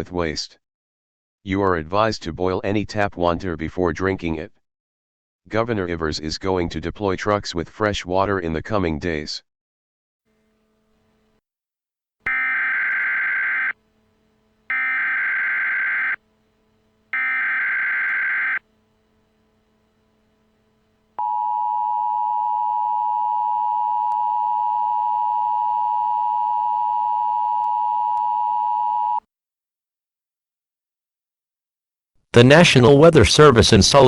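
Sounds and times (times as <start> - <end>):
digital data tone bursts: 12.3 - 13.8, 14.7 - 16.2, 17.2 - 18.6
two-tone attention signal: 12.3 - 13.8, 14.7 - 16.2, 17.2 - 18.6.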